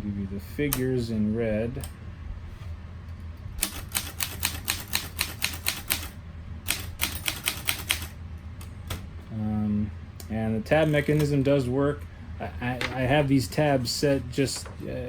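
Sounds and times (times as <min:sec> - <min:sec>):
typewriter keys clicking: 0:03.6 - 0:06.1, 0:06.7 - 0:08.1.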